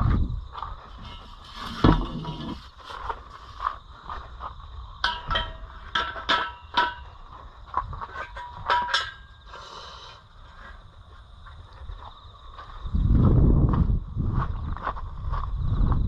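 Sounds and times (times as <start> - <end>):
metallic clinks and rattles: 5.0 - 7.2, 8.1 - 9.5.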